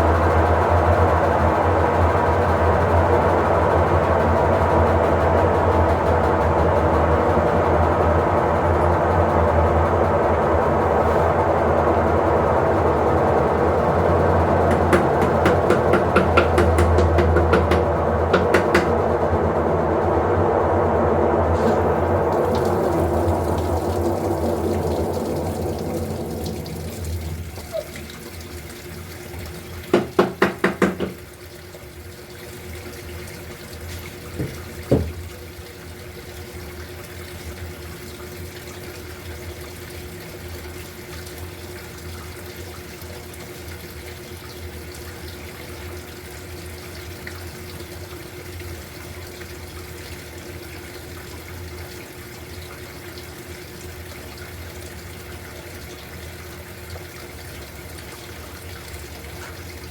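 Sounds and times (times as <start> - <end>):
water rushing into washing machine: 0.0 - 59.9
double knock: 14.7 - 19.0, 29.9 - 31.2.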